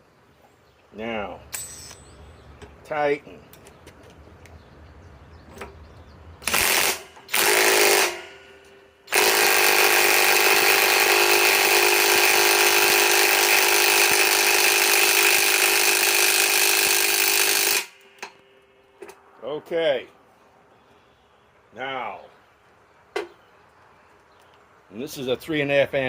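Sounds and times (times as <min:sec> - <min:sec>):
impact wrench bursts: 0:06.4 - 0:18.3.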